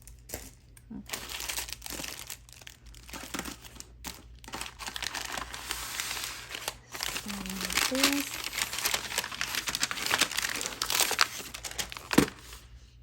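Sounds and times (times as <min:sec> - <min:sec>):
packaging crinkling: 0:00.0 - 0:12.7.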